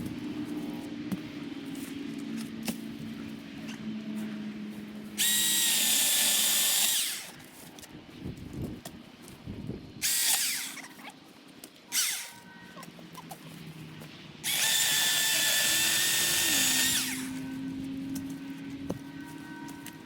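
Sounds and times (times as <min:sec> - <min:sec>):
electric chainsaw motor whining: 0:05.2 - 0:07.4, 0:10.0 - 0:10.9, 0:11.9 - 0:12.4, 0:14.4 - 0:17.6.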